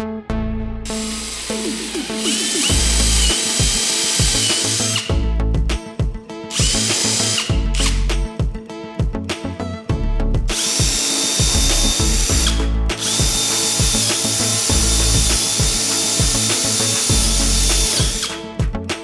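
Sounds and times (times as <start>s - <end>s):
background music with steady beat: 0.0s - 19.0s
power tool motor whining: 0.9s - 5.3s, 6.5s - 8.2s, 10.5s - 18.6s.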